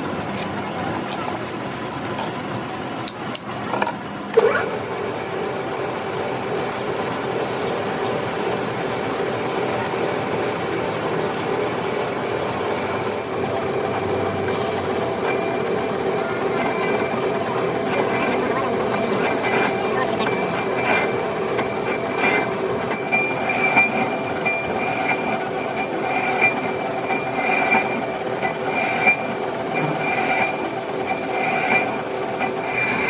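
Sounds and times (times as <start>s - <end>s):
lathe running: 0.0s - 33.0s
cutting tool squealing on metal: 2.0s - 2.7s, 6.1s - 6.7s, 11.0s - 12.6s, 14.5s - 15.6s, 28.7s - 31.9s.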